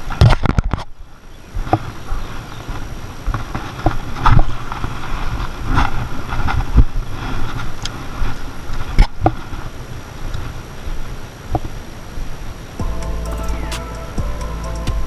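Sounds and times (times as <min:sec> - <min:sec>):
rumbling noise on microphone: 0:00.0 - 0:15.0.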